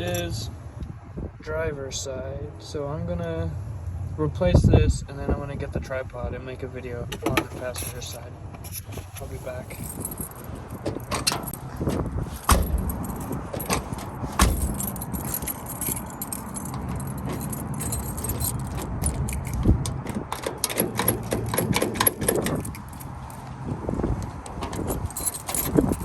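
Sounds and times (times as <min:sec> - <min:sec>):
keys and tools clinking: 0:07.1 - 0:23.6, 0:24.2 - 0:26.0
heavy thumps against car door: 0:10.8 - 0:15.3.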